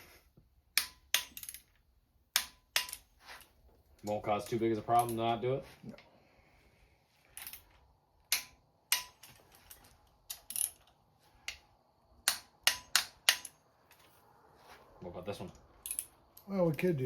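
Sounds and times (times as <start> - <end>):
sharp metallic tool clicks: 0.8 - 1.6, 8.3 - 9.3, 11.5 - 13.6.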